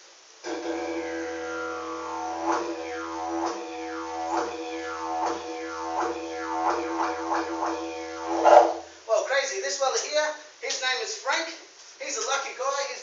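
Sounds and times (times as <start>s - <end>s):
didgeridoo drone: 0.5s - 8.9s.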